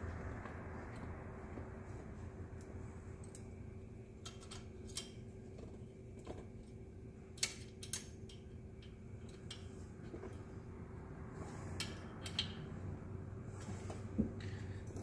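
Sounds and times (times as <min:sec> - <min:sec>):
steady low hum: 0:00.0 - 0:15.0
metal clicks and clinks: 0:07.4 - 0:09.8, 0:11.8 - 0:12.7.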